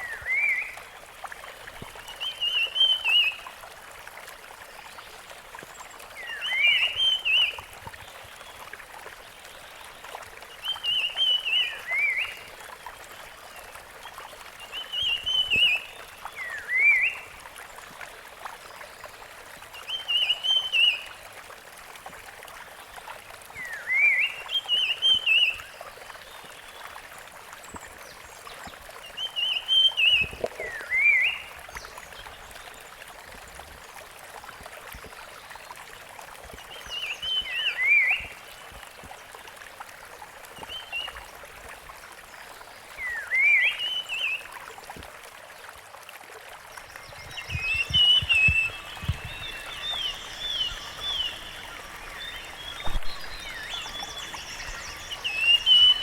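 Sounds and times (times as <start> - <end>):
steady background hiss: 47.1 - 56.0
bird singing high notes: 47.4 - 56.0.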